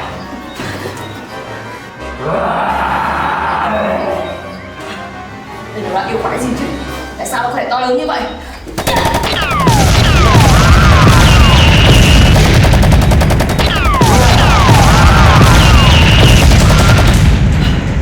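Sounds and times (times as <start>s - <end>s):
automatic gunfire: 8.8s - 17.4s.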